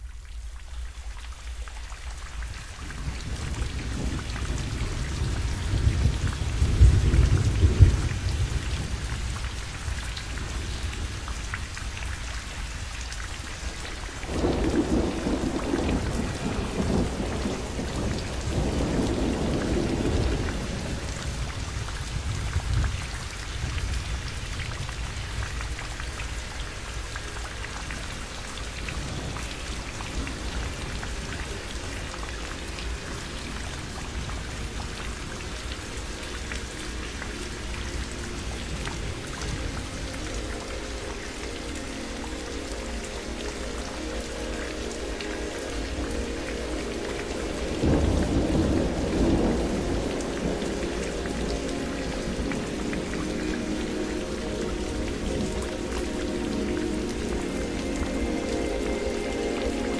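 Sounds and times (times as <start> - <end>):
steady rain: 0.0 - 59.9
rolling thunder: 2.8 - 11.2, 14.3 - 25.9, 47.4 - 55.6.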